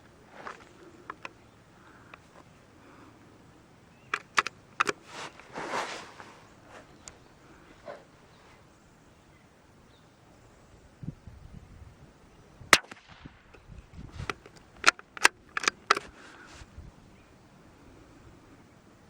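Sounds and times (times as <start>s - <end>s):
rifle shot: 12.7s - 13.6s
metallic rifle bolt clicks: 14.3s - 16.1s.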